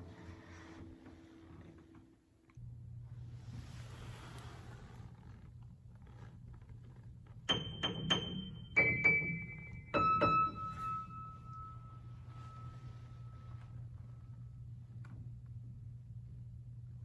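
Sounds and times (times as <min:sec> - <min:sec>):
low steady hum: 0:02.4 - 0:17.0
high piano notes: 0:07.5 - 0:12.9.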